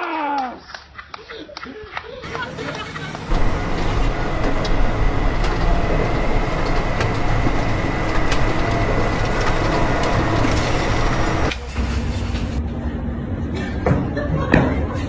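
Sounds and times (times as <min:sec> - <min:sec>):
high steady whine: 0:02.2 - 0:12.6
sharp clicks and knocks: 0:02.2 - 0:12.6
mechanical rumble: 0:02.2 - 0:12.7.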